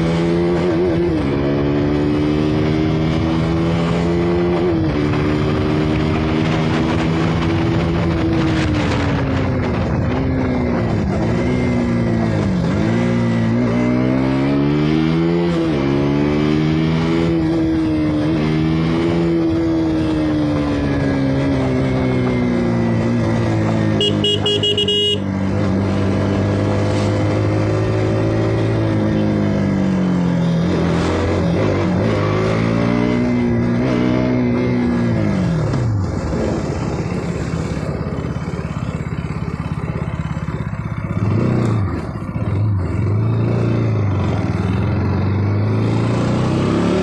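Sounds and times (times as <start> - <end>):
motorcycle engine revving: 0.0 - 47.0
horn tone: 23.9 - 25.3.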